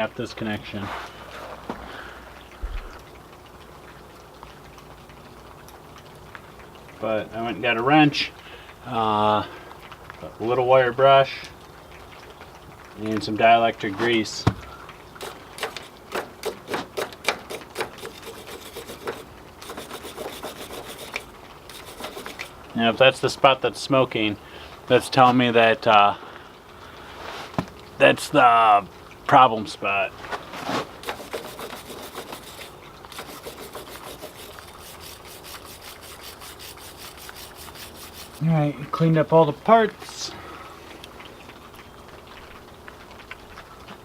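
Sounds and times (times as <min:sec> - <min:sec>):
wire brush scraping metal: 0:15.2 - 0:22.6, 0:30.6 - 0:38.5.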